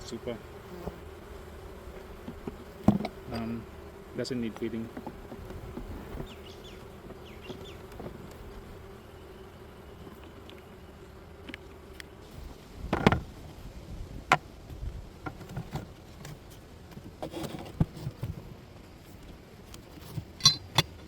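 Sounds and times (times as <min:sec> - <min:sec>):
honey bees humming: 0:00.0 - 0:21.0
wooden hive parts knocking: 0:02.2 - 0:03.6, 0:04.4 - 0:08.6, 0:12.8 - 0:13.3.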